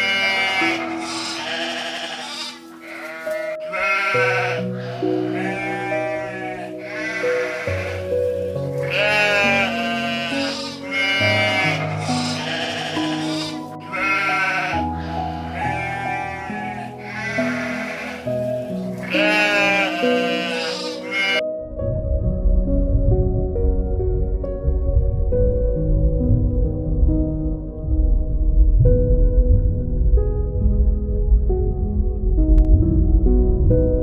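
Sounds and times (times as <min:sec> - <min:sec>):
sheep bleating: 0:00.0 - 0:08.0, 0:08.8 - 0:21.4
background music low notes: 0:00.0 - 0:34.0.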